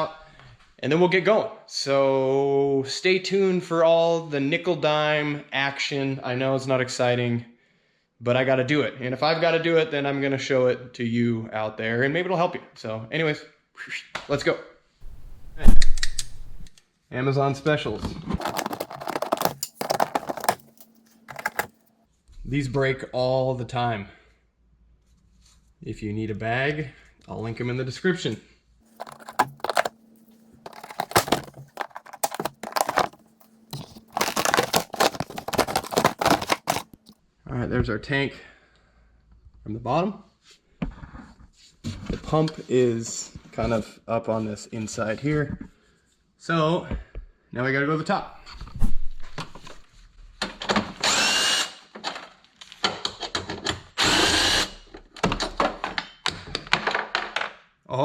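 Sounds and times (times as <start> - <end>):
plastic clips clicking and cracking: 15.1 - 16.7, 18.4 - 21.7, 29.0 - 29.9, 30.7 - 37.1
tools and metal parts clinking: 18.4 - 21.8, 28.9 - 37.0.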